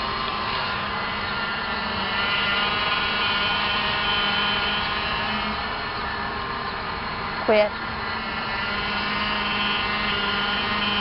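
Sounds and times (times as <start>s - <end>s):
power steering whining: 0.0s - 11.0s.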